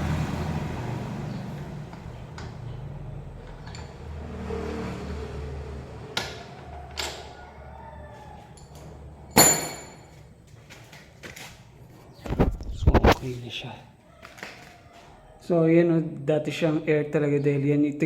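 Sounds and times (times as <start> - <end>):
low vehicle rumble: 0.0 - 10.7
loud metal clank: 9.3 - 10.1.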